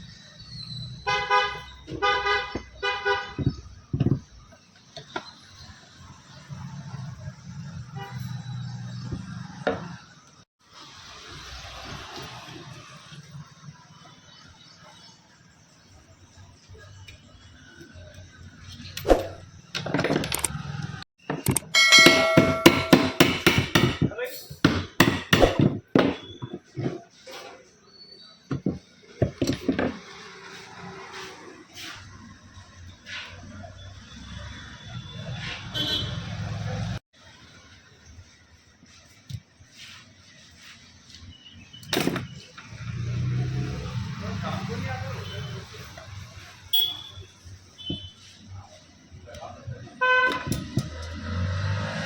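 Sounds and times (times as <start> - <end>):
vehicle horn honking: 1.1 - 3.6, 35.0 - 36.6, 46.7 - 48.2, 50.0 - 50.5
scattered knocks: 21.3 - 26.7
metal being struck with ringing: 21.6 - 23.7.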